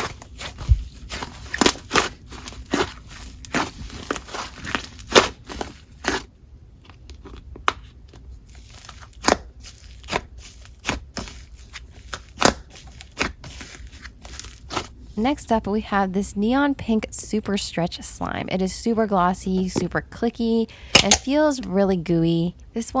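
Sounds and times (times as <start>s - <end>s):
hands squishing slime: 0.0s - 6.3s, 8.4s - 15.2s.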